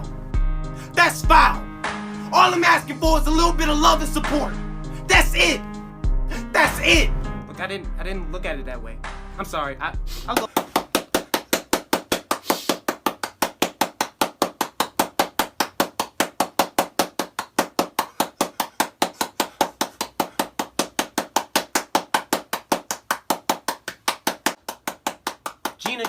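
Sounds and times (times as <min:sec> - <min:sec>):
rapid sharp taps: 0:10.4 - 0:26.0.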